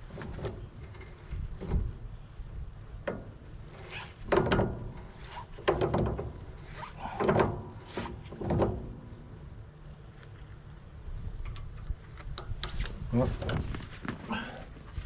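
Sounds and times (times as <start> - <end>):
steady low rumble: 6.3 - 15.0.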